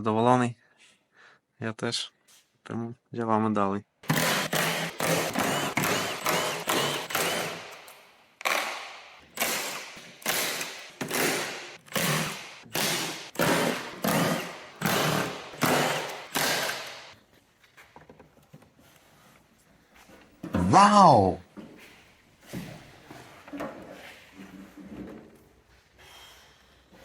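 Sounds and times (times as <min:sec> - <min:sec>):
power tool bursts: 0:04.0 - 0:07.8, 0:08.4 - 0:17.1.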